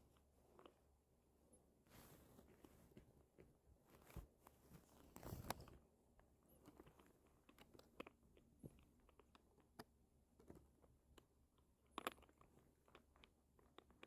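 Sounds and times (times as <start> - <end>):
cat crunching food: 5.1 - 14.0.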